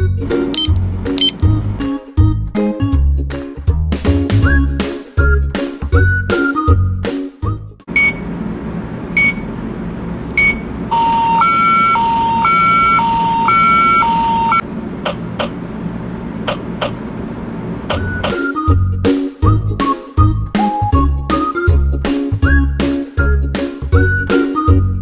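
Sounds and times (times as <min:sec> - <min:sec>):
short electronic beeps: 0:08.0 - 0:08.3, 0:09.2 - 0:09.5, 0:10.4 - 0:14.6
two-tone toy siren: 0:10.9 - 0:14.6.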